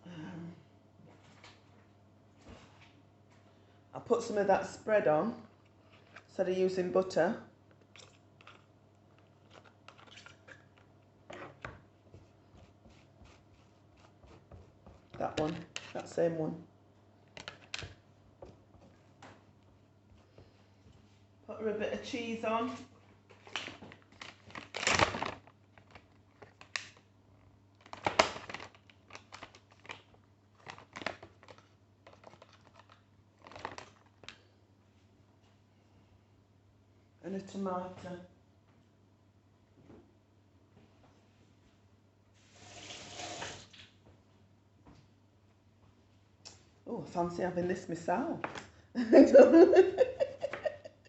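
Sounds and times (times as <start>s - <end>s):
clicks and taps of food handling: 7.7s - 16.0s, 23.3s - 34.4s.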